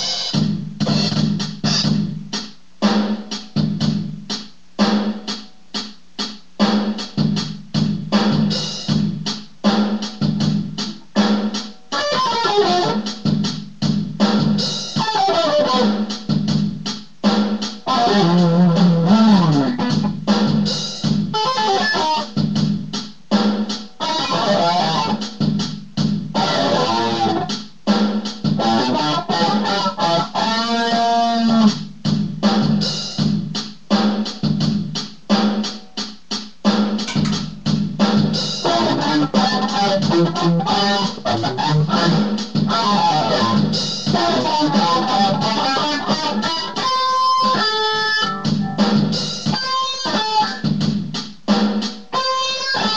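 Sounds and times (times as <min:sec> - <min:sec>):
electric guitar with pedal effect: 0:11.9 - 0:13.1, 0:15.0 - 0:16.1, 0:17.8 - 0:20.3, 0:21.3 - 0:22.3, 0:24.0 - 0:25.3, 0:26.4 - 0:27.5, 0:28.6 - 0:31.8, 0:38.6 - 0:50.8, 0:52.1 - 0:52.9.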